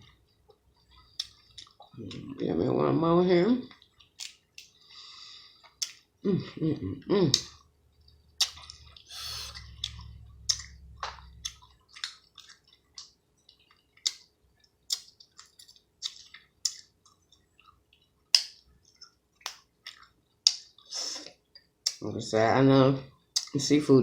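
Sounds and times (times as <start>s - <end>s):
chewing: 0.0s - 2.2s, 3.6s - 4.9s, 7.3s - 22.0s.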